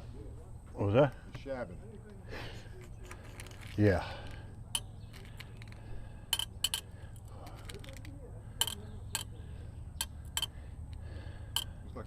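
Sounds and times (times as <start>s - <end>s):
light metallic clicks and clinks: 2.0s - 9.4s, 10.0s - 11.8s
faint talk: 7.3s - 10.0s.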